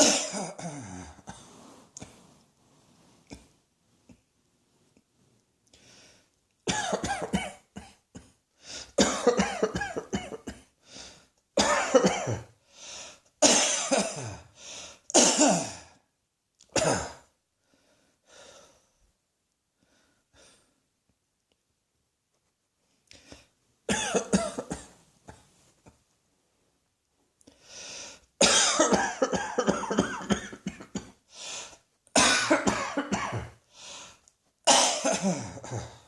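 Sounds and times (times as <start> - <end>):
person coughing: 0.0 - 1.3, 6.7 - 8.4, 9.0 - 10.7, 11.6 - 12.5, 13.4 - 14.5, 15.2 - 15.9, 16.7 - 17.3, 23.9 - 25.4, 28.4 - 31.2, 32.2 - 33.6, 34.7 - 36.0
faint breathing: 12.6 - 13.3, 14.6 - 15.1, 17.6 - 19.1, 27.4 - 28.3, 31.3 - 31.9, 33.7 - 34.3.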